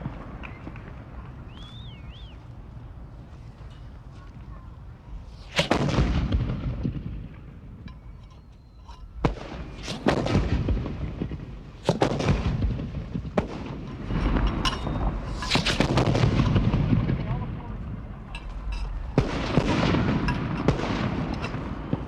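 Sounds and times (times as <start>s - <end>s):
rifle shots with echo: 5.5s - 7.8s, 9.2s - 22.0s.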